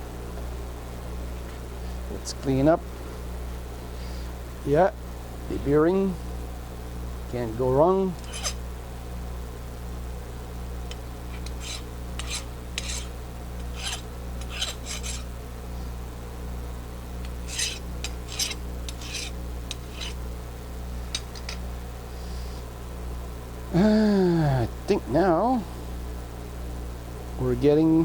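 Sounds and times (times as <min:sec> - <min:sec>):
steady low hum: 0:00.0 - 0:28.0
metal scraping and clinking: 0:08.2 - 0:08.6, 0:11.3 - 0:15.3, 0:17.2 - 0:20.2.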